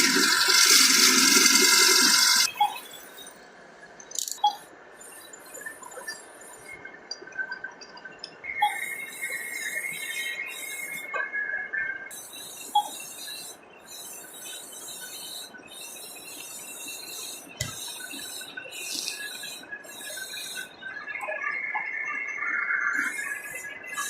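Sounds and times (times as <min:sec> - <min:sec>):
faint steady squeal: 0:08.4 - 0:24.0.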